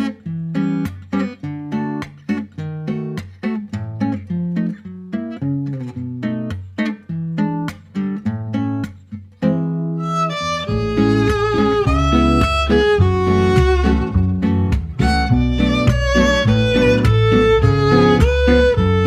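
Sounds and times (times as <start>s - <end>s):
plucked acoustic guitar: 0.0s - 19.0s
bowed strings: 10.0s - 19.0s
steady bass: 10.3s - 19.0s.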